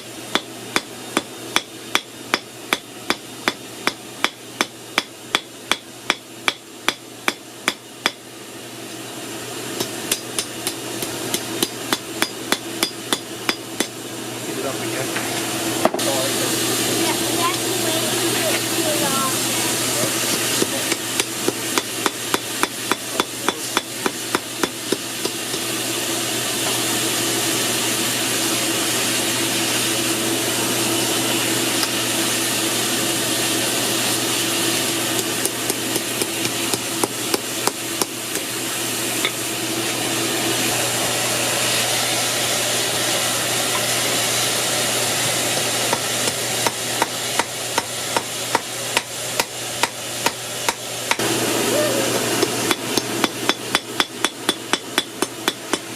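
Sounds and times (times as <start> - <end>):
hammer striking steel on anvil: 0.3 - 8.2, 9.8 - 14.0, 20.3 - 25.7, 35.2 - 38.5, 45.9 - 51.2, 52.4 - 55.9.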